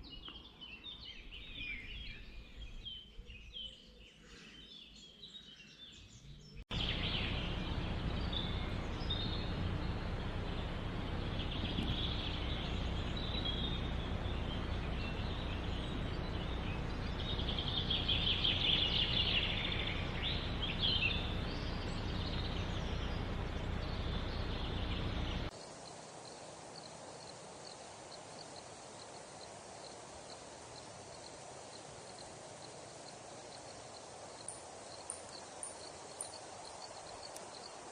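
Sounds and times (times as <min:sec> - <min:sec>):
birds calling: 0:00.0 - 0:25.6
quiet hiss: 0:06.5 - 0:37.9.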